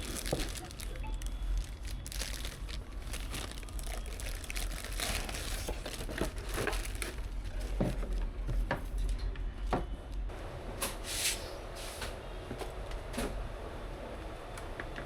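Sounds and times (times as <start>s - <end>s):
plastic crinkling and rustling: 0.0s - 9.0s.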